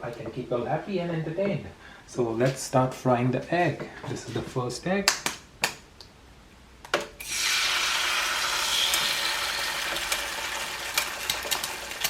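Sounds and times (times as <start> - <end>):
oil popping and crackling: 7.2 - 12.0
oil sizzling: 7.2 - 12.0.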